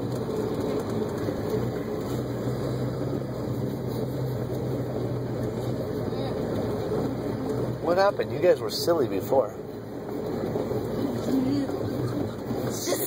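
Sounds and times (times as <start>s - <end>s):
tyres rumbling on dirt road: 0.0s - 13.0s
vehicle engine running: 0.0s - 13.0s.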